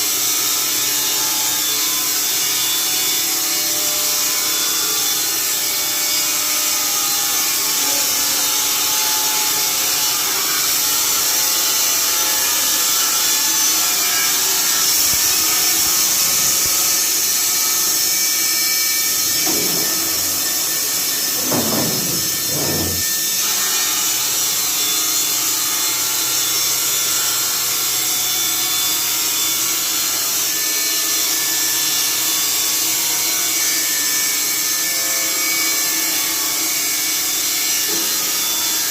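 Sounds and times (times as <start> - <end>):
saw blade whines: 17.7 - 23.6
band saw blade sawing log: 19.3 - 23.2.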